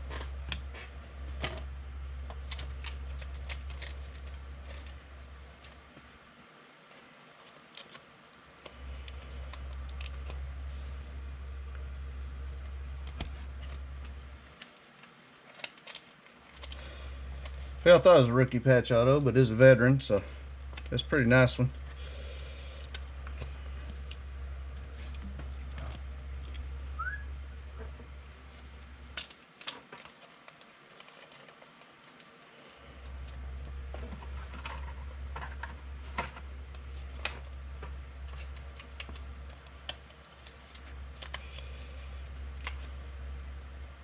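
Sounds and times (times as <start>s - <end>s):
cards and wrappers handled: 0.0s - 18.6s, 28.2s - 44.0s
steady low hum: 0.0s - 44.0s.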